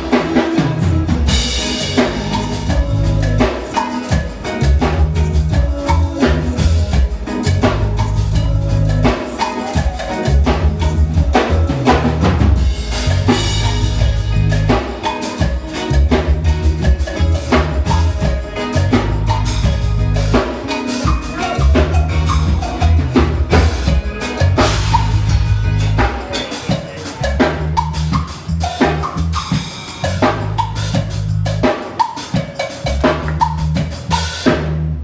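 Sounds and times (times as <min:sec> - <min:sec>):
sustained low bass notes: 0:00.0 - 0:03.5, 0:04.2 - 0:09.1, 0:10.2 - 0:26.3, 0:27.2 - 0:29.4
band playing loudly: 0:00.0 - 0:35.0
drum kit beat: 0:00.0 - 0:35.0.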